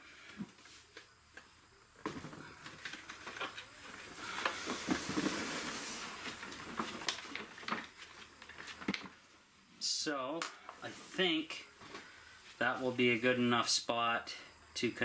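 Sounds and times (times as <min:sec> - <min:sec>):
battery scraping along floor: 0:02.2 - 0:09.1.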